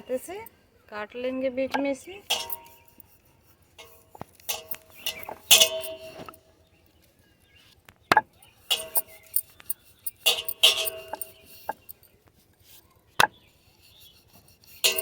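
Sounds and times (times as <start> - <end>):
rolling pin scraping and clattering: 2.2 - 6.4, 14.7 - 15.0.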